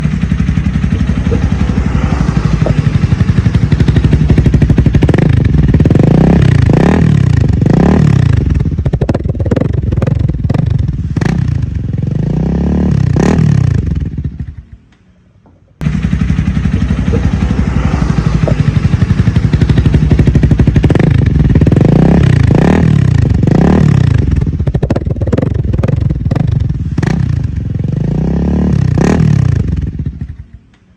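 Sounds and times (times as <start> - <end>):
motorcycle engine idling and revving: 0.0 - 30.9.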